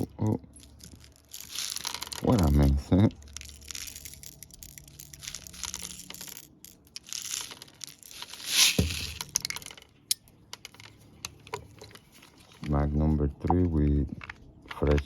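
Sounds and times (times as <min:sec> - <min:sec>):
gas cartridge hiss and thump: 0:08.5 - 0:09.2.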